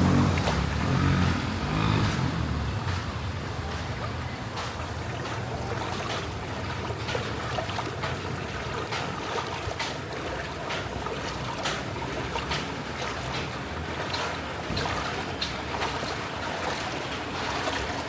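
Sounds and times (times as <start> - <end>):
low engine hum: 0.0 - 9.3
floodwater sloshing: 0.0 - 18.0
short sharp splashes: 0.0 - 18.0.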